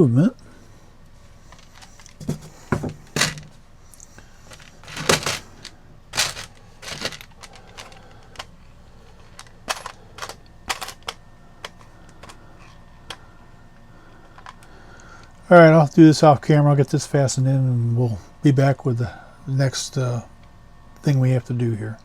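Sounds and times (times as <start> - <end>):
small metal parts clicking: 3.2 - 12.4.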